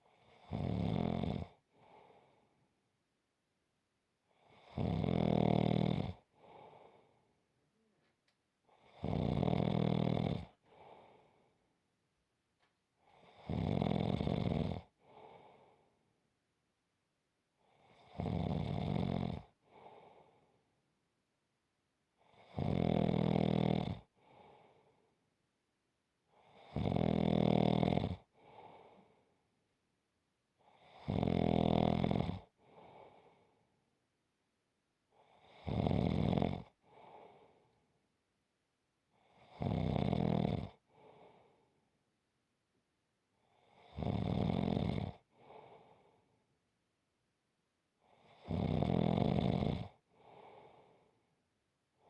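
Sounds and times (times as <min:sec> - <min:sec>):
loud snoring: 0:00.1 - 0:02.0, 0:04.4 - 0:06.3, 0:08.7 - 0:11.0, 0:13.1 - 0:15.4, 0:17.7 - 0:20.1, 0:22.2 - 0:24.5, 0:26.4 - 0:29.0, 0:30.7 - 0:33.3, 0:35.2 - 0:37.4, 0:39.2 - 0:41.3, 0:43.5 - 0:45.8, 0:48.1 - 0:50.9
soft breath: 0:01.7 - 0:02.8, 0:06.3 - 0:08.8, 0:10.5 - 0:11.7, 0:15.0 - 0:16.1, 0:19.6 - 0:20.7, 0:24.2 - 0:25.2, 0:28.2 - 0:29.4, 0:32.6 - 0:33.7, 0:36.8 - 0:37.9, 0:40.8 - 0:41.8, 0:45.3 - 0:46.5, 0:50.0 - 0:51.3.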